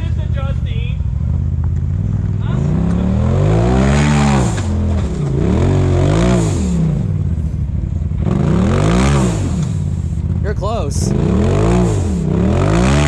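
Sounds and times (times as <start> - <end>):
utility vehicle engine revving: 0.0 - 13.0.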